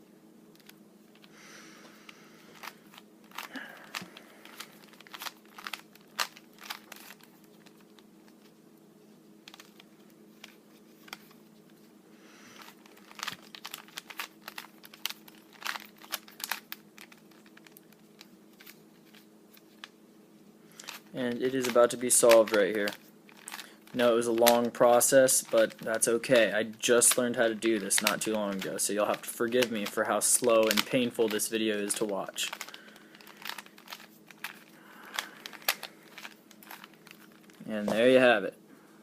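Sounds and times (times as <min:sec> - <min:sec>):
low steady hum: 0:00.0 - 0:39.0
puzzle cube twisting clicks: 0:02.6 - 0:08.0, 0:12.6 - 0:19.2, 0:20.8 - 0:24.7, 0:30.6 - 0:37.6.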